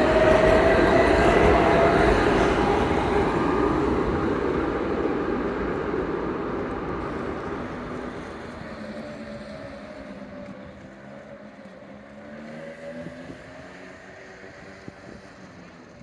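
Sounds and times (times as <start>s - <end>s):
tram rumbling past: 0.0s - 10.0s.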